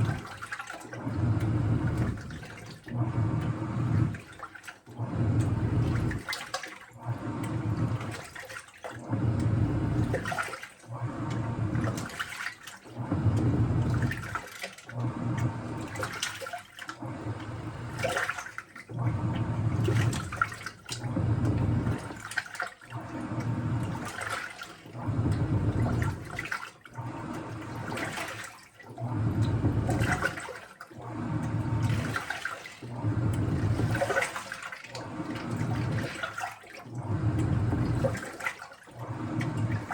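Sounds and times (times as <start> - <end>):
washing machine drum turning: 0.0 - 39.9
water and laundry sloshing: 0.0 - 39.9.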